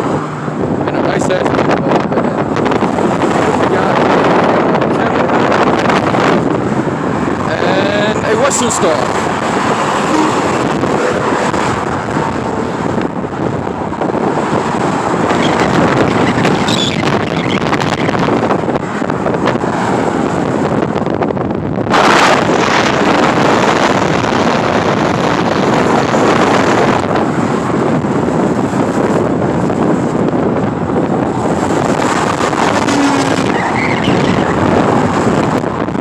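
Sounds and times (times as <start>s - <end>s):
highway traffic rushing past: 0.0s - 36.0s
wind buffeting microphone: 0.0s - 36.0s.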